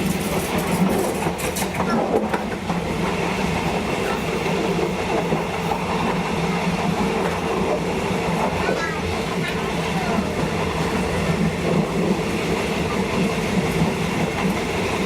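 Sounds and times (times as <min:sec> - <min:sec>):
wheels clicking over rail joints: 0:00.0 - 0:11.1
train wheels rumbling on rail: 0:00.0 - 0:15.0.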